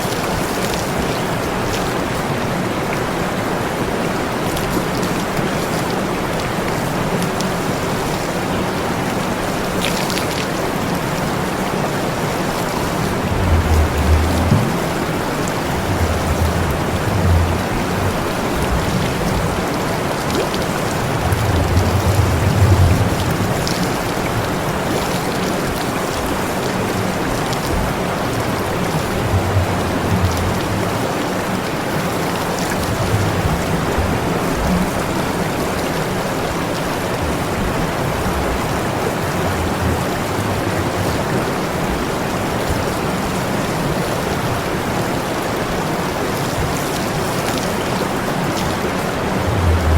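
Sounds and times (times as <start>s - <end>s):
water spraying: 9.6s - 26.1s, 48.5s - 49.9s
low rumbles: 12.2s - 25.0s, 27.3s - 35.8s, 37.2s - 42.0s, 48.7s - 49.9s.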